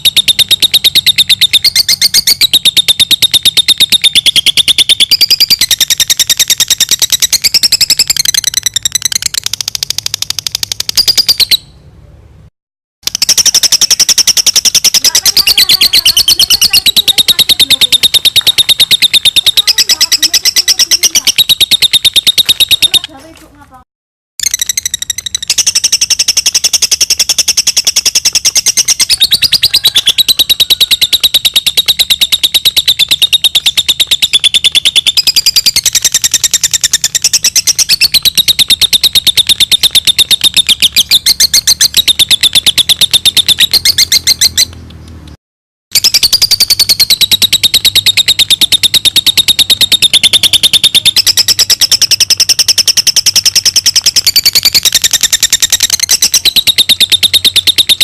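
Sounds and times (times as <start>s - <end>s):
lovebird chattering: 0.0s - 11.8s, 13.0s - 23.4s, 24.4s - 44.8s, 45.9s - 58.0s.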